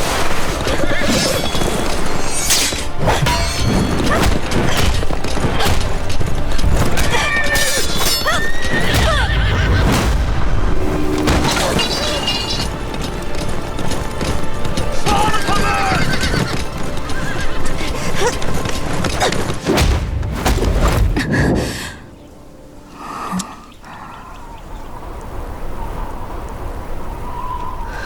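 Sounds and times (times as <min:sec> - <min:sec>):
horses neighing: 0:00.6 - 0:04.8, 0:06.9 - 0:10.0, 0:15.0 - 0:19.6
sharp crashes and impacts: 0:02.4 - 0:12.7, 0:19.6 - 0:21.3.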